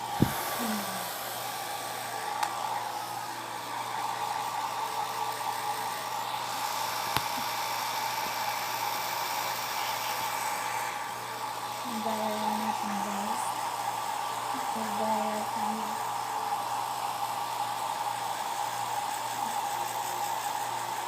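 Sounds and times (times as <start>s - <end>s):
hair dryer blowing: 0.0s - 21.0s.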